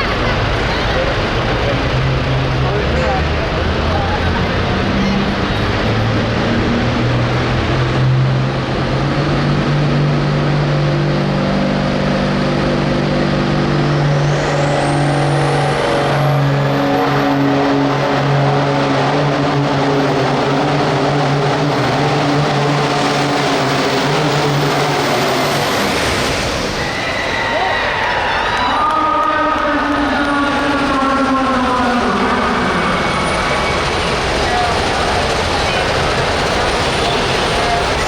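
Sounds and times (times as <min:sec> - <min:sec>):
diesel tractor engine under load: 0:00.0 - 0:27.2, 0:29.0 - 0:38.0
high turbo whistle: 0:12.2 - 0:20.6, 0:25.2 - 0:34.7.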